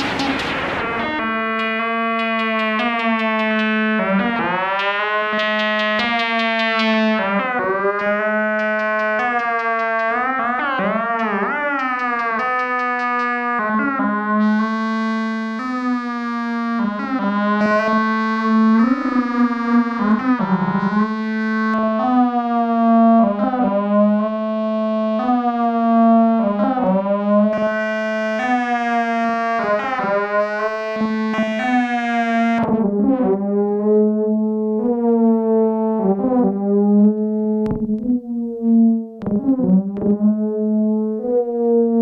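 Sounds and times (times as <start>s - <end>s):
low synthesizer drone: 0.0s - 1.8s.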